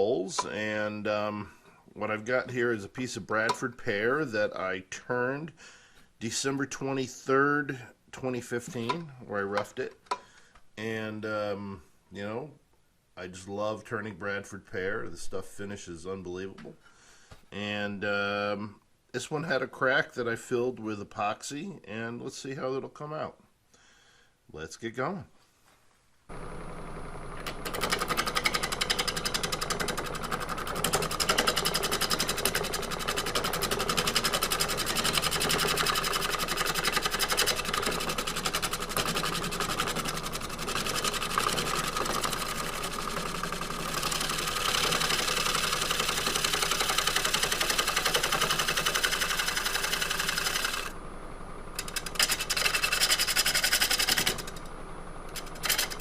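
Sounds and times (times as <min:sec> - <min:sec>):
gouge scraping spinning wood: 0:26.3 - 0:51.0, 0:51.7 - 0:56.0
wood lathe motor hum: 0:26.3 - 0:56.0.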